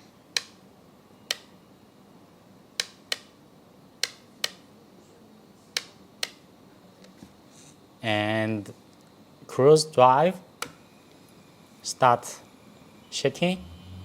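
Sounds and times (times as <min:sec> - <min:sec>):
plastic switch clicks: 0:00.4 - 0:00.6, 0:01.3 - 0:01.5, 0:02.8 - 0:03.3, 0:04.0 - 0:04.6, 0:05.8 - 0:06.4.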